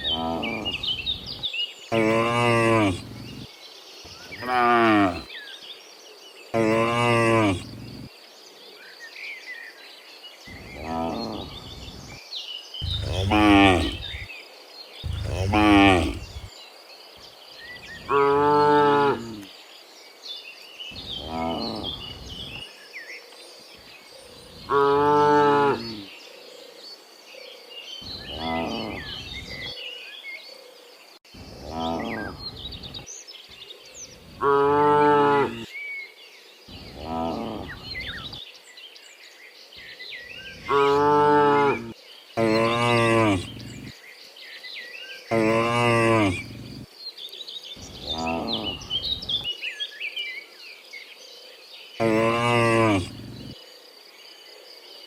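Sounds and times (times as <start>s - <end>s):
small birds chirping: 0.0s - 5.7s, 6.4s - 8.1s, 10.4s - 18.1s, 41.8s - 55.0s
cows mooing: 2.0s - 3.4s, 4.4s - 5.3s, 6.6s - 8.1s, 12.8s - 14.3s, 15.0s - 16.5s, 40.8s - 43.9s, 45.3s - 46.8s, 52.0s - 53.5s.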